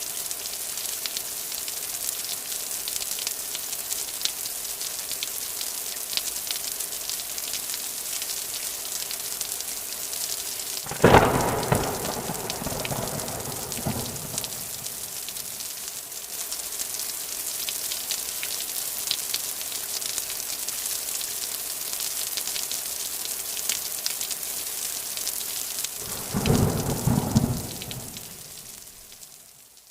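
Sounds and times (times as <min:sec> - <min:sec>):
steady rain: 0:00.0 - 0:29.9
thunder crack and rumble: 0:10.9 - 0:15.5, 0:26.0 - 0:28.7.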